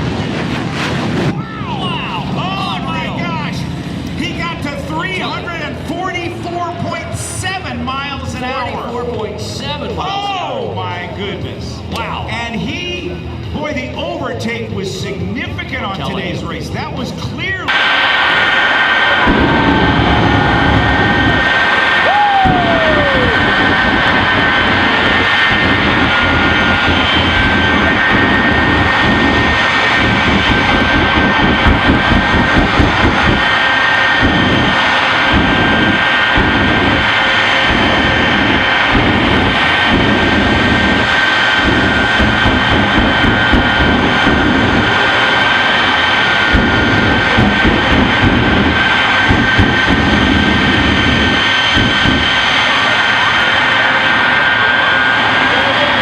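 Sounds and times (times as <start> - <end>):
jet engine roaring: 0.0 - 56.0
high whining tones: 17.6 - 56.0.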